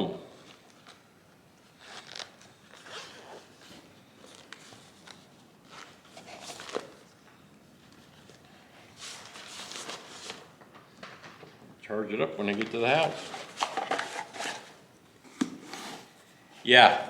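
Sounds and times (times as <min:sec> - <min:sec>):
bag rustling: 0:12.5 - 0:14.9
short scraping handling noises: 0:13.0 - 0:14.8.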